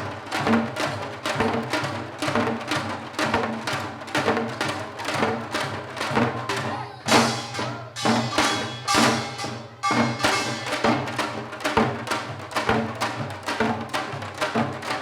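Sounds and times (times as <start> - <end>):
hourglass drum stick strokes: 6.1 - 12.8
ringing drum accents: 6.2 - 11.9.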